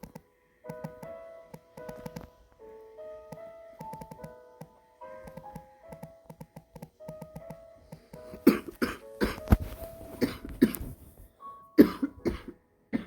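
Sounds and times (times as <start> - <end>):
soft piano notes: 0.0 - 13.0
woman coughing: 8.4 - 9.4, 11.8 - 13.0.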